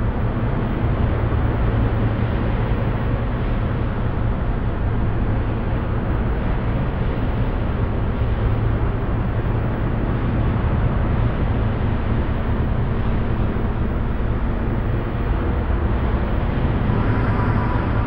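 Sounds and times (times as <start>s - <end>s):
rumbling noise wash: 0.0s - 18.0s
strong low hum: 12.2s - 18.0s.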